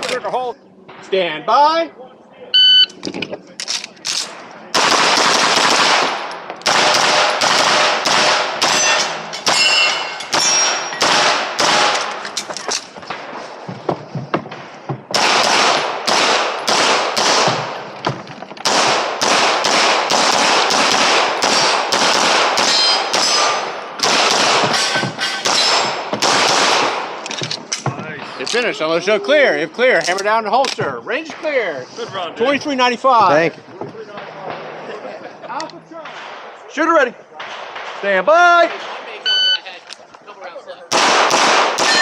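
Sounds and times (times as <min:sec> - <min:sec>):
pistol shots: 0:04.1 - 0:12.4, 0:14.5 - 0:27.9, 0:37.4 - 0:38.0, 0:40.9 - 0:42.0.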